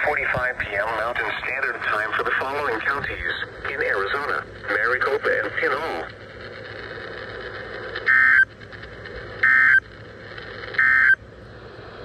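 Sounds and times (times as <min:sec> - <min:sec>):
radio hiss: 0:00.0 - 0:12.0
buzzing digital data tones: 0:04.7 - 0:11.2.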